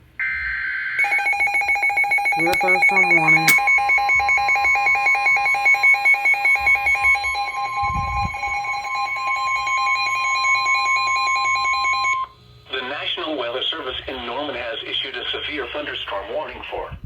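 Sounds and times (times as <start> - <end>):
steady high alarm tone: 1.0 - 12.3.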